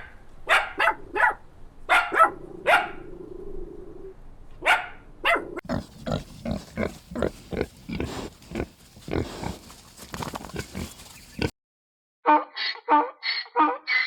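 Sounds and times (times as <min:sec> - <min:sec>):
pig grunting: 0:05.6 - 0:11.5.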